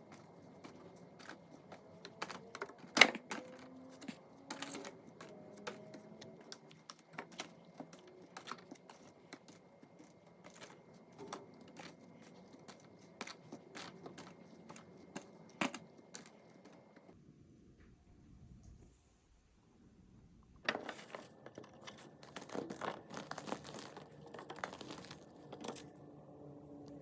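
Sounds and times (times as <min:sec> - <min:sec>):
containers clicking on shelves: 0:00.0 - 0:17.1.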